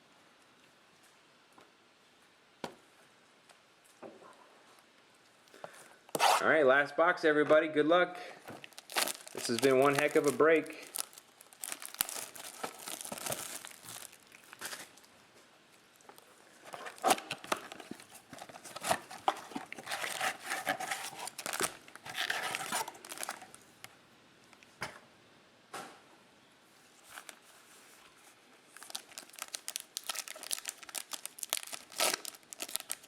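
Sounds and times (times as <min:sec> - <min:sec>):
card pack wrappers tearing: 0:08.6 - 0:15.0, 0:16.7 - 0:23.6, 0:28.8 - 0:33.0.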